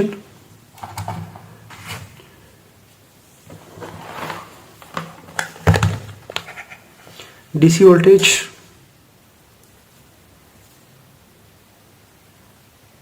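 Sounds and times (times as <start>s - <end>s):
scraping rustle: 0.8s - 7.2s.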